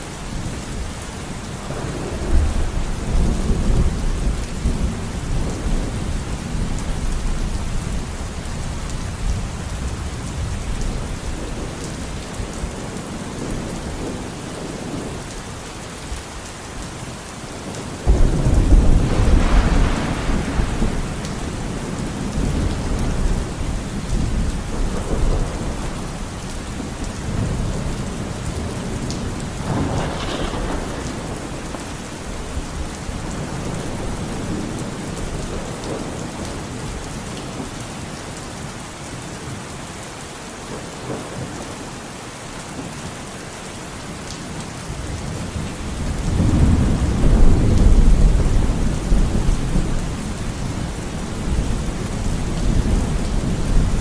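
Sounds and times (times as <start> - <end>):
steady rain: 0.0 - 54.0
rolling thunder: 1.6 - 15.2, 17.7 - 37.0, 45.0 - 54.0.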